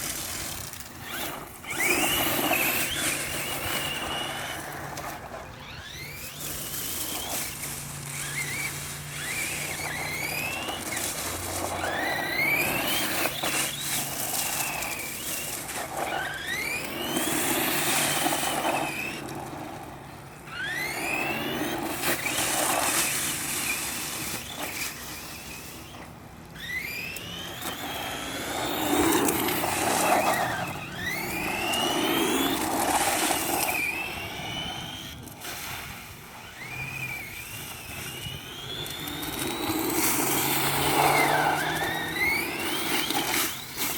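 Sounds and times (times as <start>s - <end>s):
electric motor whining: 0.0s - 43.9s
tyre and drivetrain noise: 0.0s - 43.9s.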